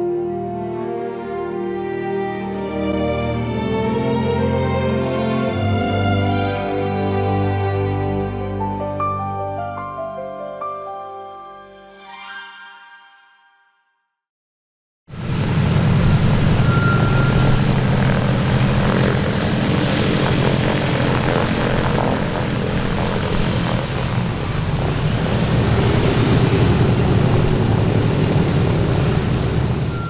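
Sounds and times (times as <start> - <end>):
propeller aircraft piston engine: 15.1 - 30.0.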